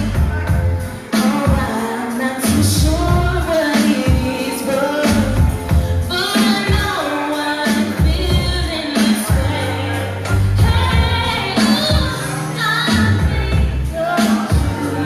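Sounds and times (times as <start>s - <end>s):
bass and drums backing: 0.0s - 7.0s, 7.6s - 15.0s
woman singing pop song: 0.0s - 15.0s.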